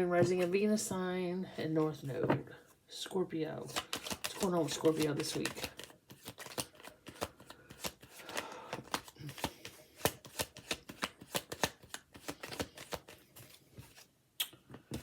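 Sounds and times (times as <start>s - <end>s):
cards being shuffled: 3.7s - 14.1s.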